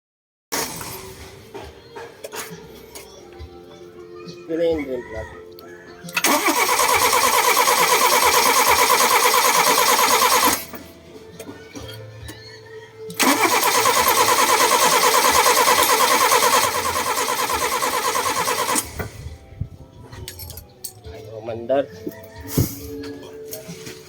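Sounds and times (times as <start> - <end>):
car engine cranking on starter: 0.6 - 1.4, 6.1 - 10.9, 13.1 - 19.4.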